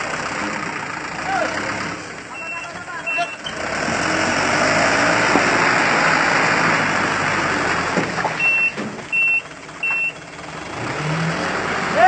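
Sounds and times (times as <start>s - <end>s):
off-road vehicle running hard: 0.0s - 12.0s
short high electronic beeps: 2.4s - 3.5s, 8.4s - 10.2s.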